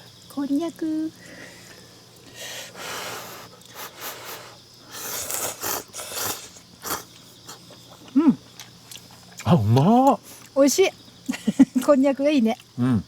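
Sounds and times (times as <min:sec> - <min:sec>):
person slurping noodles: 0:05.0 - 0:07.0.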